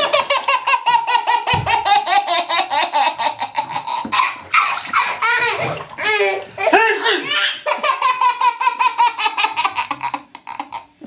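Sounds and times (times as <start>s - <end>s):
young child laughing: 0.0s - 11.0s.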